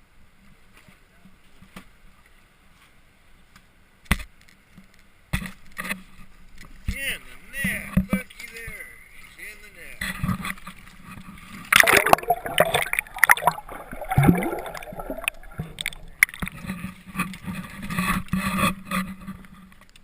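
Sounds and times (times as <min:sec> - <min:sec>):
water splashing and gurgling: 0:11.7 - 0:16.8.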